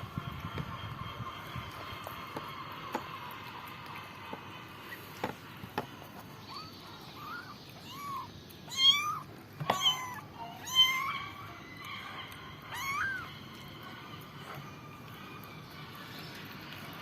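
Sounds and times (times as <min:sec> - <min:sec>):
kittens meowing: 0:06.4 - 0:13.4.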